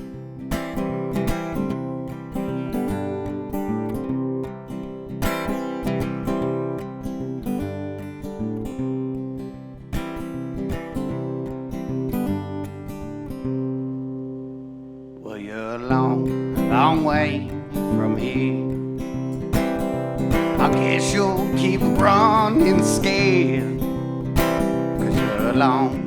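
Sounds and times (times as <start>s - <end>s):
acoustic guitar strumming chords: 0.0s - 26.0s.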